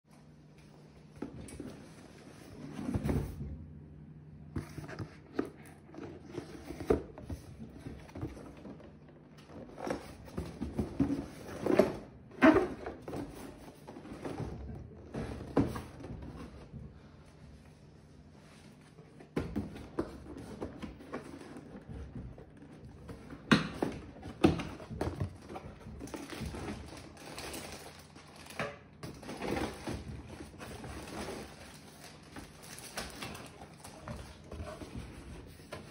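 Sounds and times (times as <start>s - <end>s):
plastic parts clicking and rustling: 23.7s - 35.1s.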